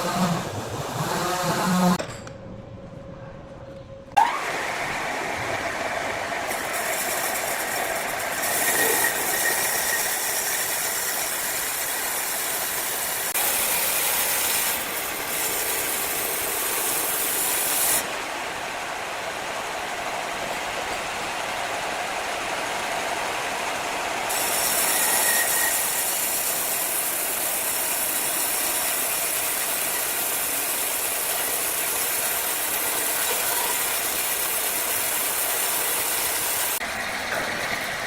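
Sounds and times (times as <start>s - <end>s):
motor-driven wood saw running: 0.0s - 2.0s, 4.2s - 18.1s, 24.3s - 38.0s.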